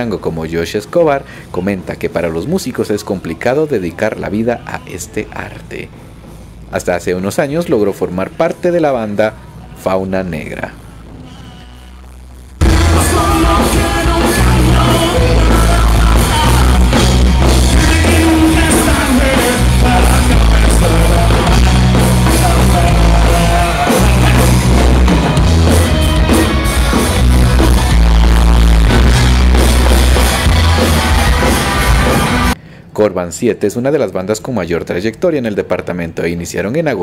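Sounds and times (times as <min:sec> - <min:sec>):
loud rock band music: 0:12.6 - 0:32.6.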